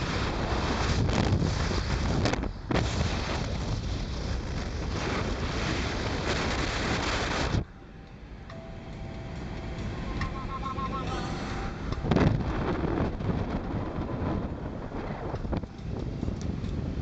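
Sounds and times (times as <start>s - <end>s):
wind buffeting microphone: 0.0s - 7.7s, 8.9s - 17.0s
rush of noise: 0.0s - 16.3s
car driving rumble: 6.3s - 17.0s.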